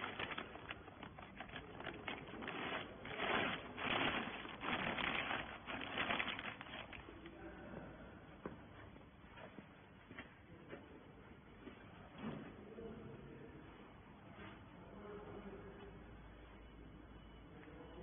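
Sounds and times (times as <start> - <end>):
rustling: 0.0 - 7.2.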